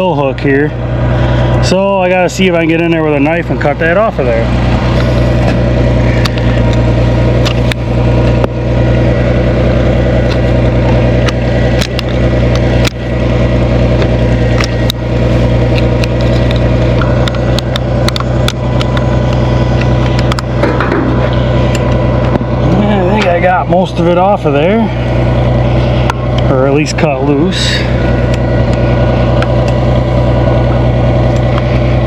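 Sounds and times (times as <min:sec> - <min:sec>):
tractor engine idling: 0:00.0 - 0:32.0.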